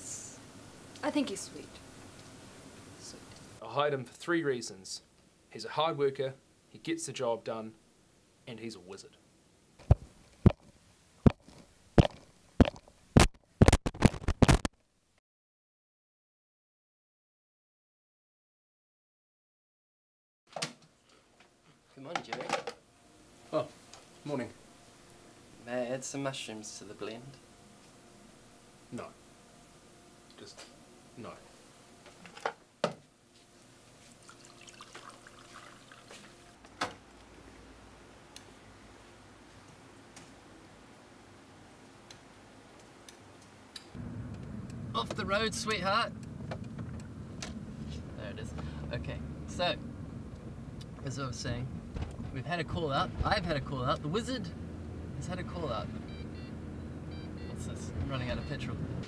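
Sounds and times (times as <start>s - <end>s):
small crackles: 9.8s - 14.9s
faint trickle of liquid: 34.0s - 36.4s
sharp loud thumps: 51.8s - 53.6s.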